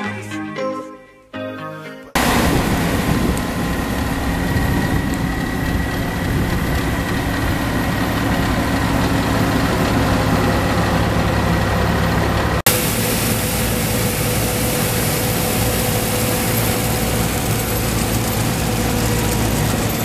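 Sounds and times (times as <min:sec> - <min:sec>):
harvest machinery running: 0:02.2 - 0:20.0
faint high whine: 0:12.7 - 0:20.0.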